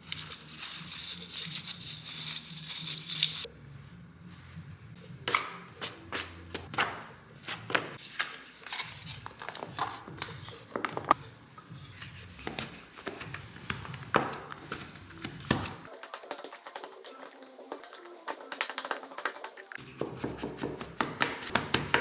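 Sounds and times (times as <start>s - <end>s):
kitchen utensil tapping and scraping: 5.3s - 22.0s.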